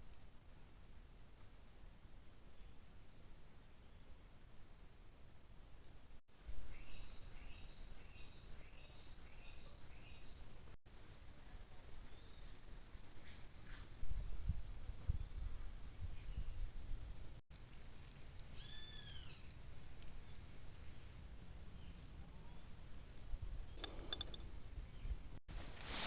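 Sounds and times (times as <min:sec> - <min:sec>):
crickets chirping: 0:10.9 - 0:25.4.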